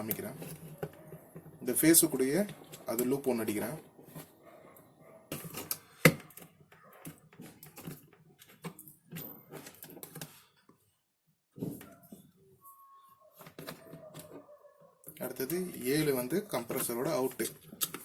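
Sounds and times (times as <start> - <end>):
clicks and taps of small parts: 16.7 - 18.0.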